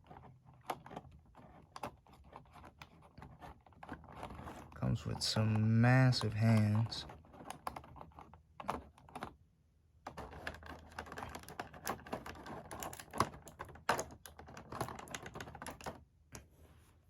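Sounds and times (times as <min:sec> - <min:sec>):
plastic clicks and clatter: 0:00.0 - 0:09.4, 0:10.0 - 0:16.5.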